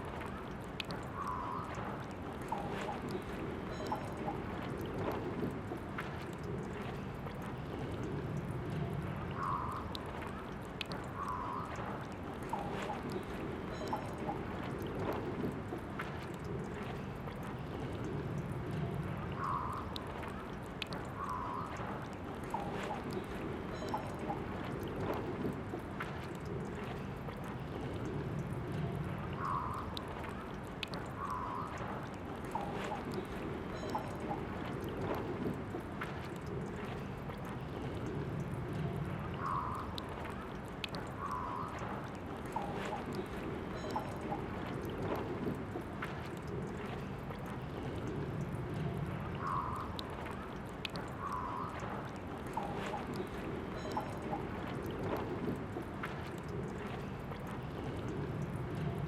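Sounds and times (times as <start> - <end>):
bright water splashes: 0.0 - 59.0
water trickling from tap: 39.4 - 59.0.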